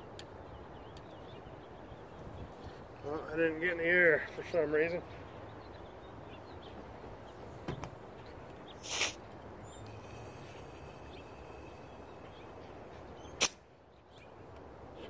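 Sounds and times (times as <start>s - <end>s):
compressed air hiss: 8.8s - 9.2s, 9.8s - 12.5s, 13.4s - 13.6s.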